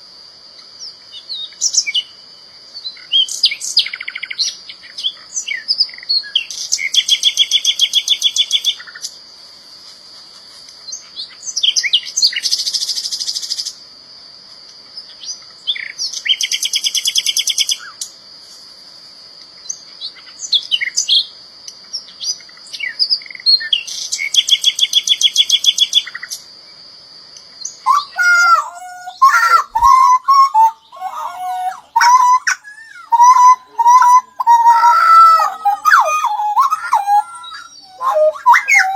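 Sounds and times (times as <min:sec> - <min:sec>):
whistled bird song: 0:01.1 - 0:09.0, 0:15.2 - 0:18.0, 0:19.6 - 0:21.3, 0:22.0 - 0:26.3, 0:27.6 - 0:38.9
bird chirps: 0:27.6 - 0:38.9
songbirds trilling: 0:27.6 - 0:38.9.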